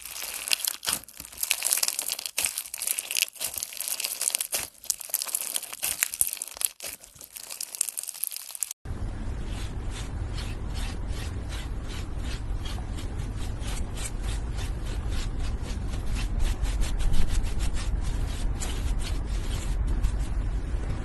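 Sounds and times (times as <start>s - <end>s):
rasping scraping strokes: 0.0s - 8.7s, 9.4s - 20.6s
steady low rumble: 8.9s - 21.0s.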